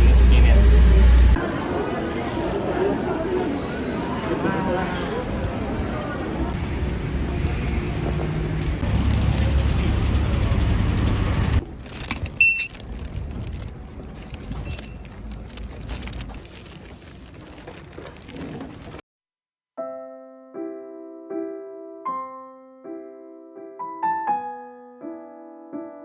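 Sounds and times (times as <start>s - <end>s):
steady background noise: 0.0s - 19.0s
gentle piano music: 19.8s - 26.0s.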